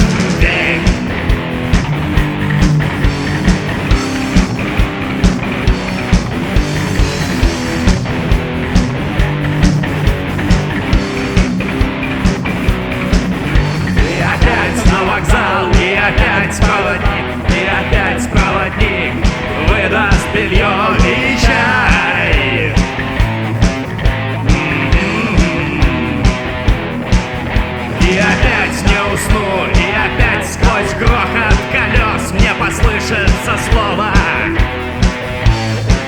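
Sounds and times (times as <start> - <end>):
rock song: 0.0 - 36.0.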